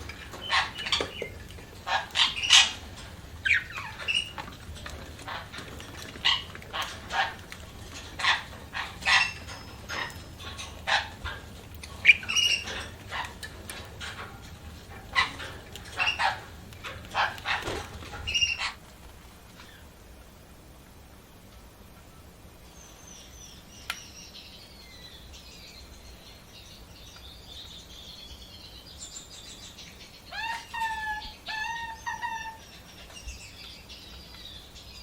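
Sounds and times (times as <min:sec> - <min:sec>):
budgerigars chirping: 0:00.0 - 0:18.8, 0:27.9 - 0:35.0.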